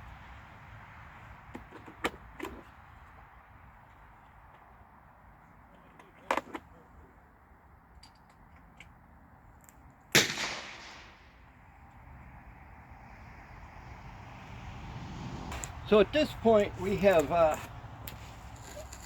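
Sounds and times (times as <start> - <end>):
gunshot with echo: 10.1 - 11.4.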